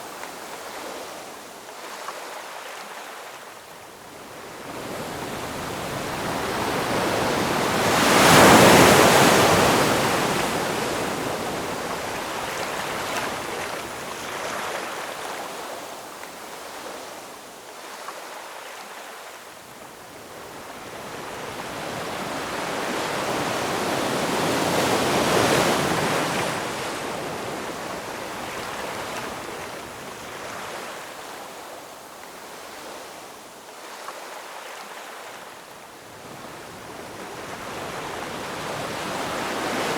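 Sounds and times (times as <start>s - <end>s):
ocean waves breaking: 4.7s - 15.6s.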